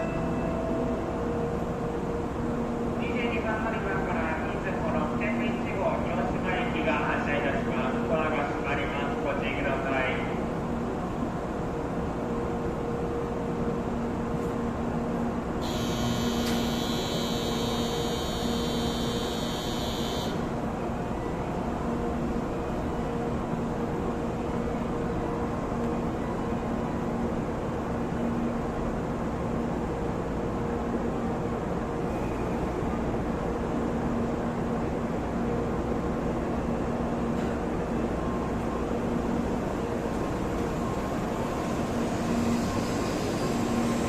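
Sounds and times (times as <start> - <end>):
shrill buzzer ringing tone: 15.6 - 20.5.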